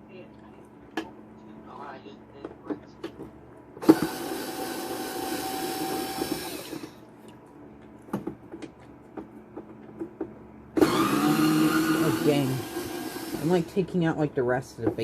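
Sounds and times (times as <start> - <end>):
small electric motor whirring: 3.8 - 7.0, 10.8 - 13.8.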